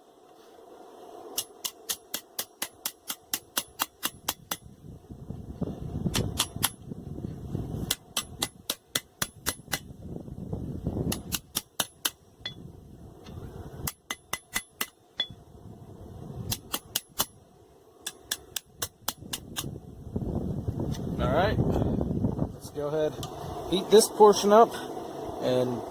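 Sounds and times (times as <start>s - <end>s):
hammer striking steel on anvil: 1.4s - 4.7s, 7.8s - 9.9s, 11.1s - 12.7s, 13.8s - 15.4s, 16.5s - 17.4s, 18.0s - 19.7s
low rushing noise: 19.5s - 25.9s.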